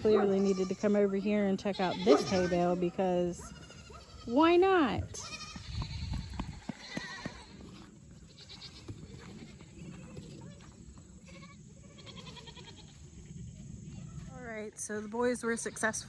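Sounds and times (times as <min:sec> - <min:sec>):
goats bleating: 0:00.0 - 0:01.0, 0:01.6 - 0:02.8, 0:03.5 - 0:13.0.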